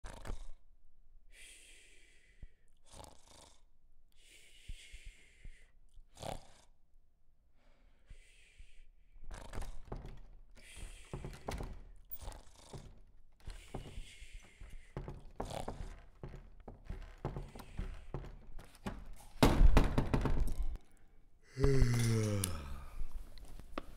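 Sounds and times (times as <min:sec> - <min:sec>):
breathy gasps and exhalations: 0:01.3 - 0:06.8, 0:07.5 - 0:19.4, 0:20.1 - 0:23.9
thuds: 0:09.6 - 0:20.8.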